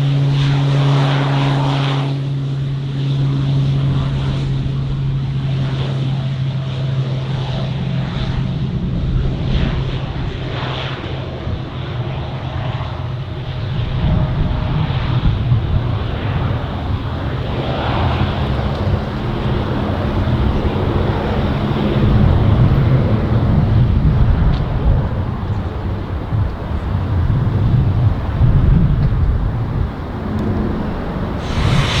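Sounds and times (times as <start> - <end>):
aircraft engine rumbling: 0.0 - 32.0
wind on microphone: 7.4 - 32.0.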